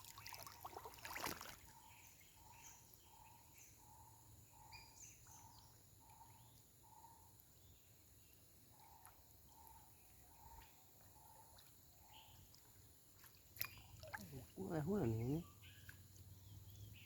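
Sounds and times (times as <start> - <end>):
faint higher chirps: 0.2 - 12.5.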